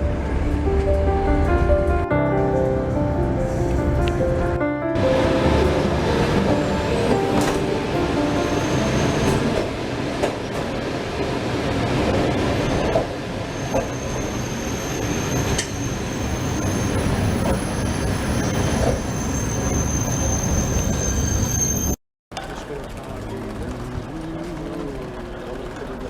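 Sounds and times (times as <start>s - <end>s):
train rumbling on rails: 0.0s - 26.0s
high wheel squeal: 6.2s - 9.8s, 12.6s - 22.0s.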